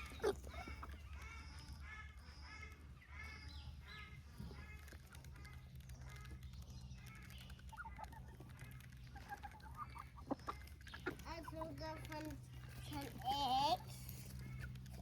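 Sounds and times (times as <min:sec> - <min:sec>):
poultry honking calls: 0:00.0 - 0:04.8.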